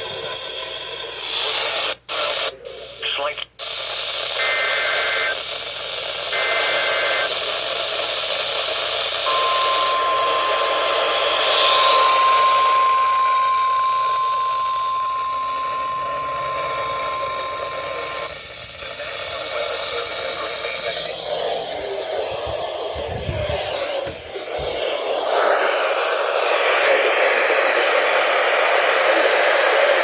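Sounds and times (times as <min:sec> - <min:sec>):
static hiss: 0:00.0 - 0:09.4, 0:15.9 - 0:30.0
long steady alarm beep: 0:08.7 - 0:18.9.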